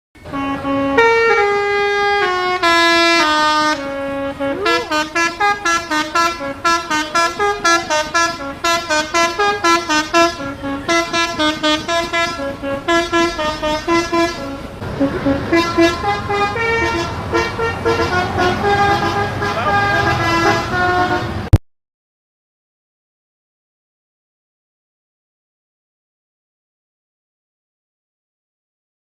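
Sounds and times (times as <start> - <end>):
multi-tone horn playing a tune: 0.2 - 21.6.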